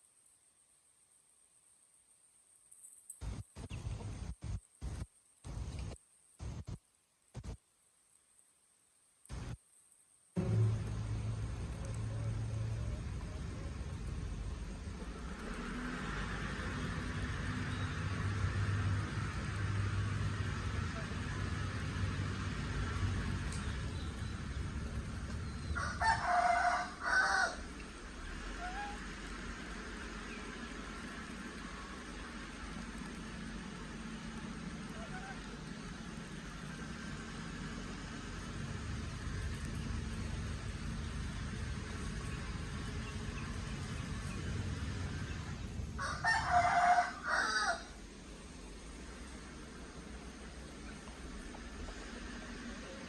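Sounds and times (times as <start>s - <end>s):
low rumble: 10.3s - 53.0s
rooster crowing: 25.6s - 27.8s, 46.0s - 48.0s.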